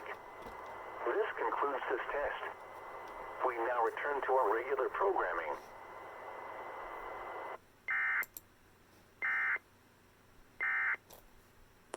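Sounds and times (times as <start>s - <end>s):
radio hiss: 0.0s - 7.6s.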